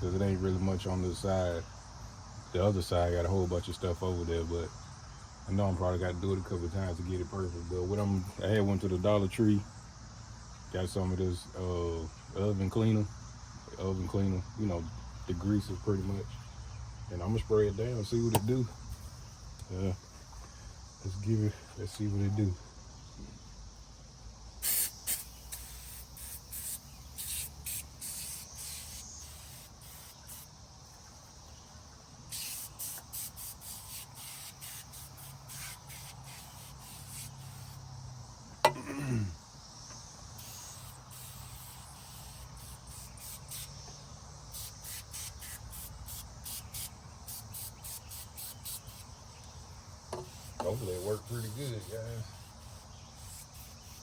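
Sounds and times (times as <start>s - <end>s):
aerosol spray hissing: 24.6s - 31.0s, 32.2s - 37.9s, 40.3s - 49.2s, 50.1s - 54.0s.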